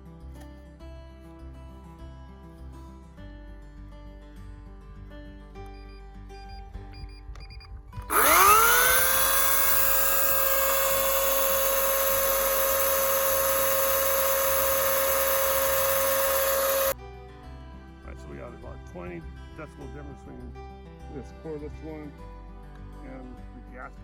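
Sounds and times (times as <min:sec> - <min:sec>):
faint background music: 0:00.0 - 0:08.1, 0:17.0 - 0:24.0
electric chainsaw motor whine: 0:08.1 - 0:17.0.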